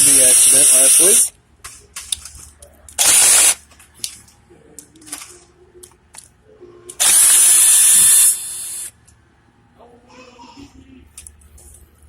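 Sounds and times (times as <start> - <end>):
power drill whining: 0.0 - 1.3, 3.0 - 3.6, 7.0 - 8.9.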